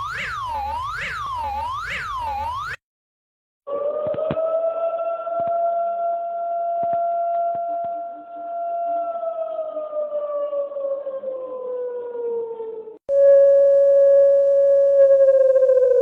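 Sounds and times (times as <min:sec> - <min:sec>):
electronic alarm tone sliding down: 0:00.0 - 0:02.8, 0:13.1 - 0:16.0.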